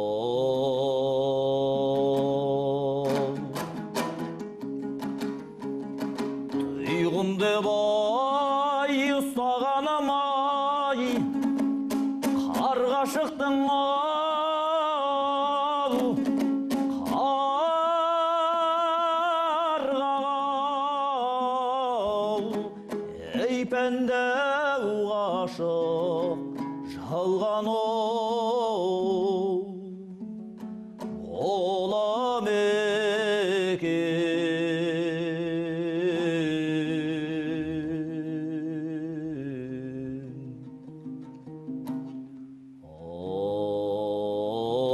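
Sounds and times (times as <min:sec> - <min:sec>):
person singing with vibrato: 0:00.0 - 0:44.9
instrumental accompaniment: 0:03.1 - 0:09.8, 0:11.0 - 0:14.5, 0:15.4 - 0:18.4, 0:40.3 - 0:42.8
person singing a long vibrato note: 0:42.8 - 0:44.9.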